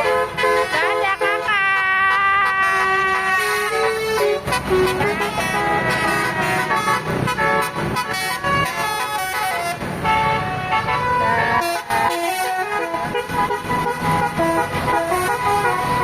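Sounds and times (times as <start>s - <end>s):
multi-tone bus horn melody: 0.0s - 16.0s.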